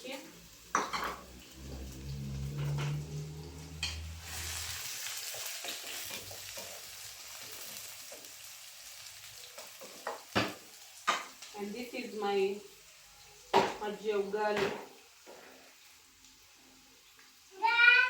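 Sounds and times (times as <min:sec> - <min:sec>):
food sizzling in hot oil: 0:00.0 - 0:18.0
low hum: 0:01.2 - 0:04.9.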